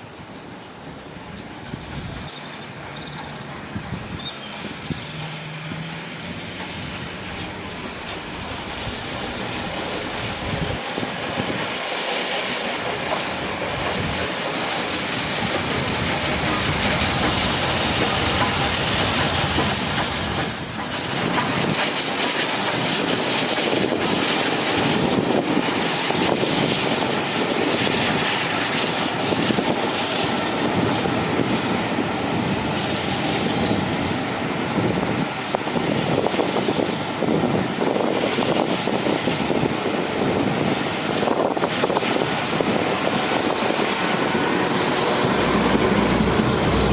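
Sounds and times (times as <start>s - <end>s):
train wheels clattering over rail joints: 2.8s - 33.8s.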